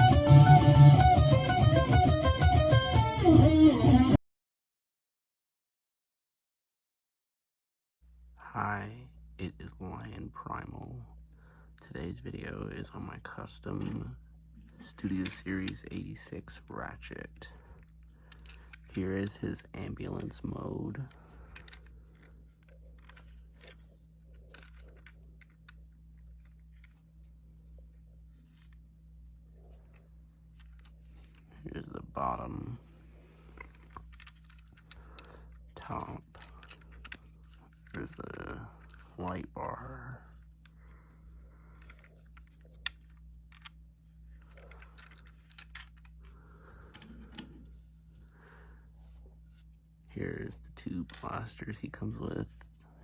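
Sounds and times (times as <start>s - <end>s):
steady low hum: 8.1s - 53.0s.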